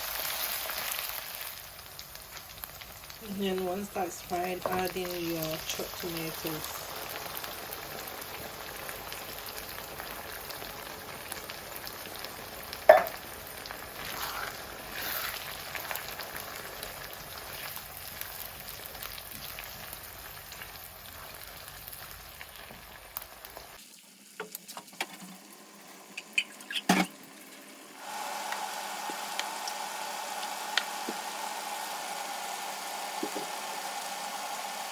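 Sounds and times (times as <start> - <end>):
food sizzling in hot oil: 0.0 - 34.9.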